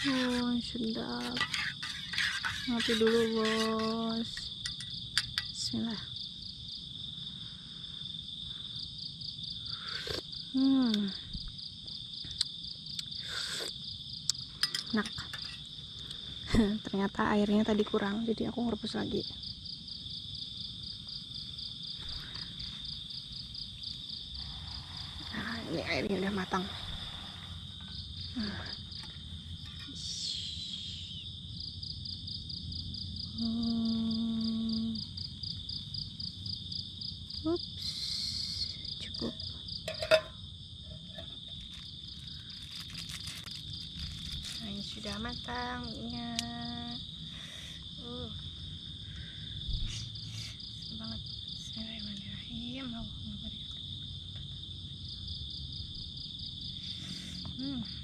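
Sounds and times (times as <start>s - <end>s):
crickets trilling: 0.0s - 58.0s
insects chirring: 0.0s - 58.0s
person sipping coffee: 9.8s - 10.3s, 13.2s - 13.8s.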